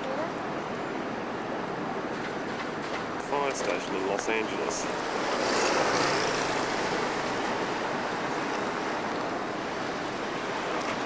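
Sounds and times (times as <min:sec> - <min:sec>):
bus engine and road noise: 0:00.0 - 0:11.0.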